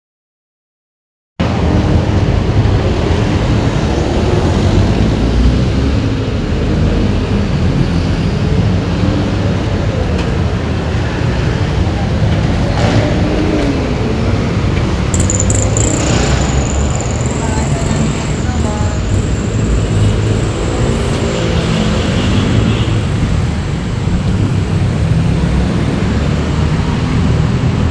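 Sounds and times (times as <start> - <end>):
road noise: 1.4 - 27.9
vehicle engine rumbling: 1.5 - 25.4
faint voices: 15.1 - 21.2.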